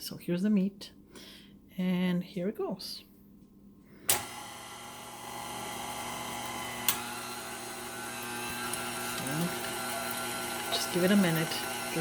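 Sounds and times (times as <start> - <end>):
stand mixer motor running: 4.2 - 12.0.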